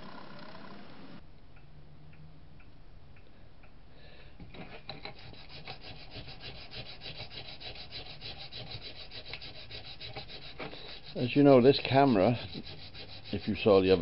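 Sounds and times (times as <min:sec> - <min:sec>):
sandpaper sanding strokes: 0:05.0 - 0:14.0.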